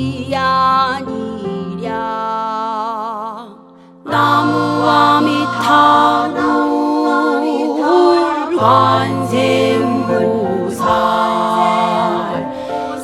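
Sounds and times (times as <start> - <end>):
solo singer with vibrato: 0.0 - 13.0
voices singing chant-like refrain: 4.1 - 13.0.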